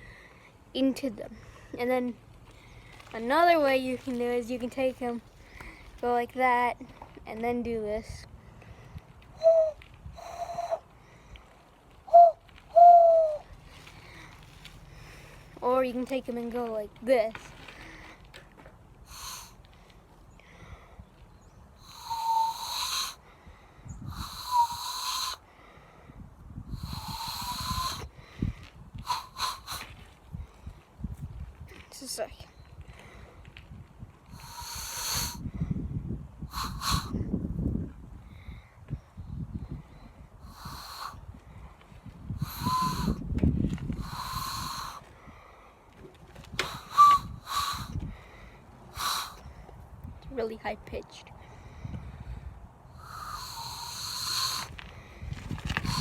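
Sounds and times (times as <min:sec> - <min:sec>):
hooting loon call through hands: 0:09.4 - 0:10.8, 0:12.1 - 0:13.5, 0:21.8 - 0:23.2, 0:24.1 - 0:25.4, 0:26.8 - 0:28.1, 0:29.0 - 0:29.9, 0:36.5 - 0:37.1, 0:40.5 - 0:41.2, 0:42.4 - 0:43.2, 0:44.0 - 0:45.0, 0:46.6 - 0:48.0, 0:49.0 - 0:49.4, 0:53.0 - 0:54.8.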